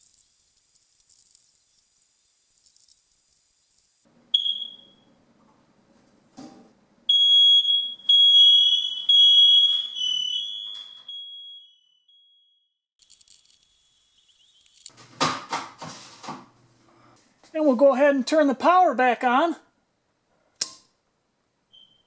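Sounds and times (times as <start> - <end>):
smoke alarm beeping: 4.3 - 5.1, 7.1 - 12.6
handling knocks and rustles: 14.6 - 16.6.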